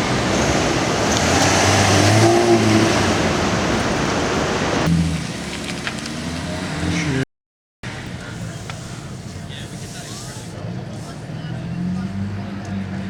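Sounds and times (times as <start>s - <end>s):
loud rushing noise: 0.0s - 5.4s.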